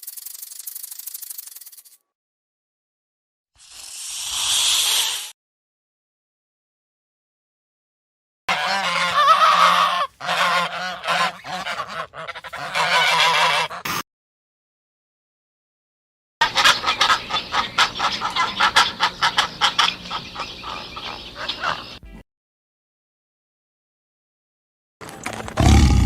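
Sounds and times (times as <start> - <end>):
geese honking: 8.5 - 13.8, 16.4 - 22.0.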